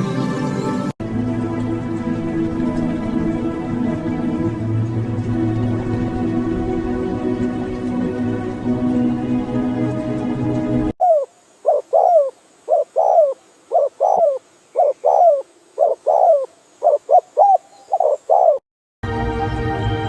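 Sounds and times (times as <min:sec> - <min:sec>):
soft background music: 0:00.0 - 0:10.9
bird calling falling notes: 0:11.0 - 0:18.6.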